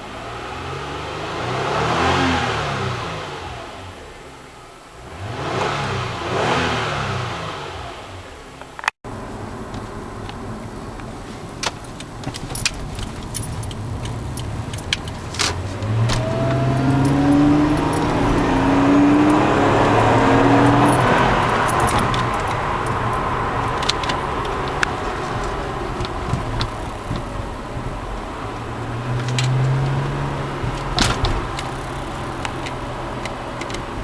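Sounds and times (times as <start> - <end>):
car engine heard from cabin: 0.0 - 34.0
cabin clicks and rattles: 9.8 - 27.8.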